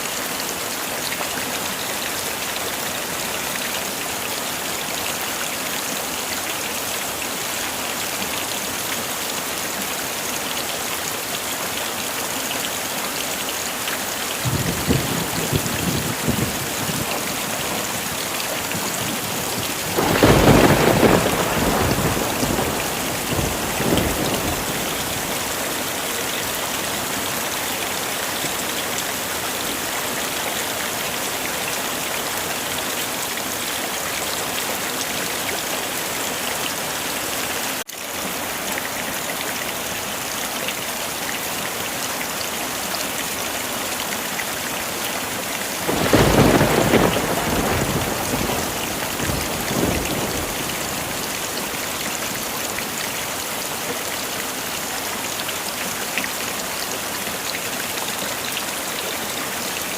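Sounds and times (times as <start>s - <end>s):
heavy rain falling: 0.0s - 59.9s
thunder clap rumbling: 14.5s - 17.4s, 18.7s - 25.5s, 45.9s - 51.2s.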